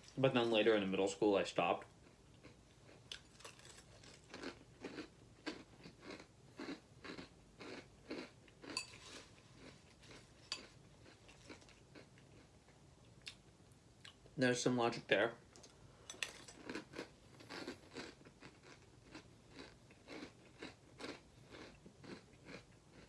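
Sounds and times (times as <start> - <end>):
chewing crunchy cereal: 2.0 - 12.6, 15.6 - 23.0.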